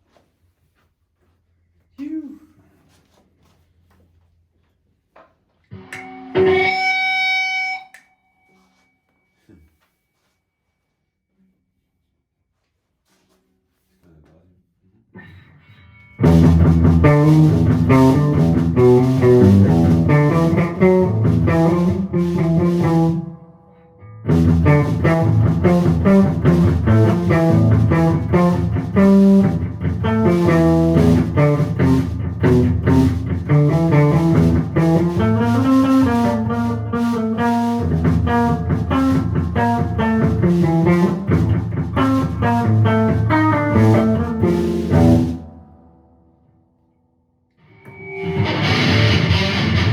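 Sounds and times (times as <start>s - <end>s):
band jamming: 5.7s - 8.0s, 16.2s - 23.3s, 24.3s - 45.4s, 47.9s - 49.9s
electric guitar playing: 5.7s - 8.0s, 15.8s - 46.0s, 47.6s - 49.9s.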